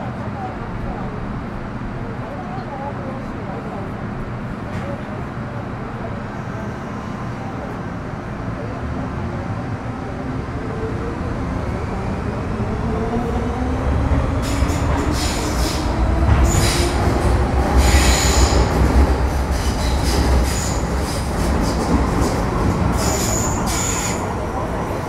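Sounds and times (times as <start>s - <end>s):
low train rumble: 0.0s - 25.0s
wheels screeching on rails: 14.4s - 24.3s.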